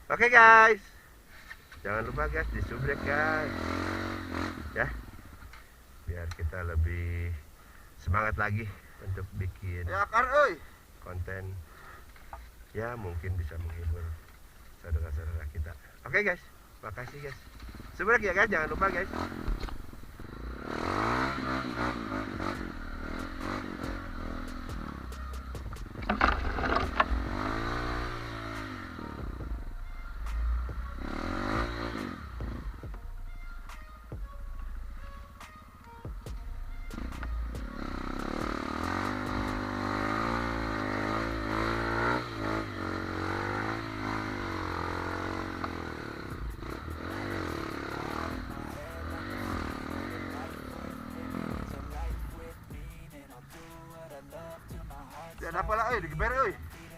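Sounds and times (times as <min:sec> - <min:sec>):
motorcycle engine revving: 0:01.8 - 0:07.4, 0:17.1 - 0:56.9
clattering clicks: 0:25.7 - 0:27.2.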